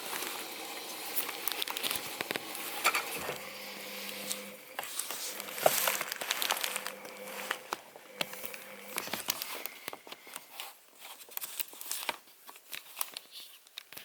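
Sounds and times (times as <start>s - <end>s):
water splashing in washing machine: 0.0s - 9.4s.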